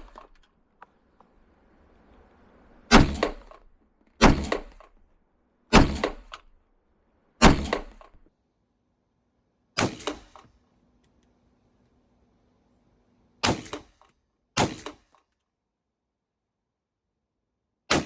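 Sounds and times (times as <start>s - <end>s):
airsoft rifle single shots: 2.9s - 3.6s, 4.2s - 5.0s, 5.7s - 6.5s, 7.4s - 8.2s, 9.8s - 10.4s, 14.6s - 15.0s.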